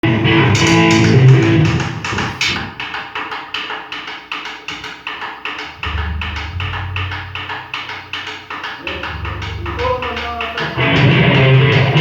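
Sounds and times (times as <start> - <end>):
steady percussive beat: 0.0 - 12.0
sustained pitched tones: 5.8 - 12.0.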